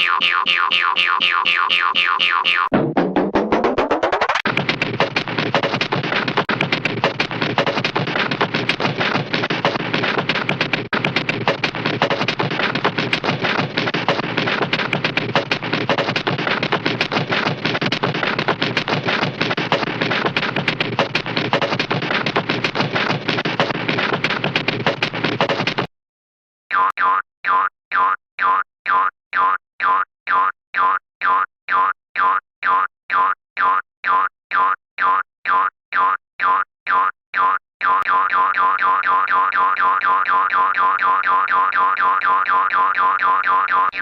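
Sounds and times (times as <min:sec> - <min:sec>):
cartoon rattle of rapid cracks: 0:03.6 - 0:25.9.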